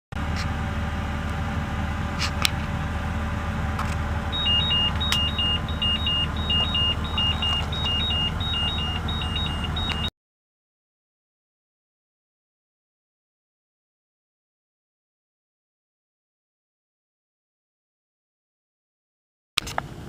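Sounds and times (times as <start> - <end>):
two-tone electronic beeping: 4.3 - 10.1.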